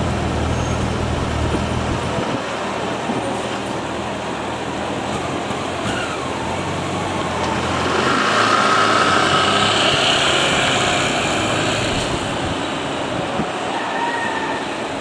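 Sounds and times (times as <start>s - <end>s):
vehicle passing: 6.6s - 13.7s.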